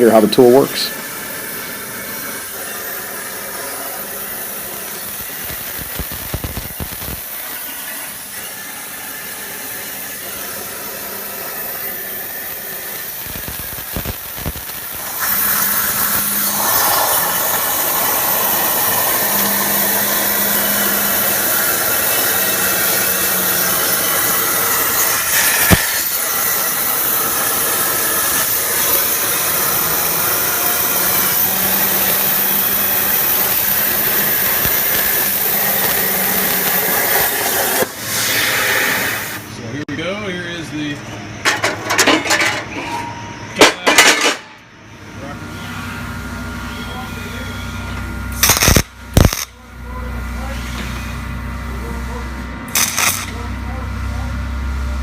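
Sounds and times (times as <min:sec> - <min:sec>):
plasma jet hissing: 0:00.8 - 0:39.5, 0:48.4 - 0:49.5, 0:52.7 - 0:53.4
sharp click: 0:48.4 - 0:49.5, 0:52.8 - 0:53.4.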